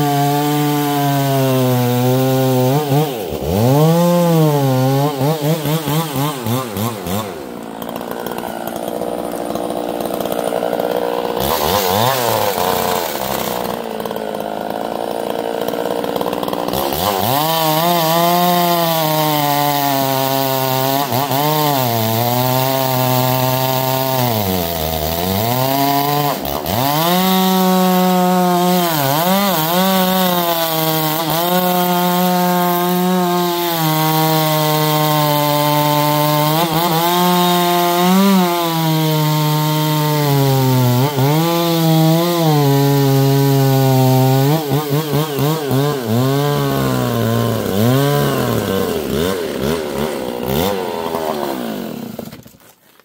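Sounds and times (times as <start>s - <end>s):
chainsaw cutting wood: 0.0s - 53.0s.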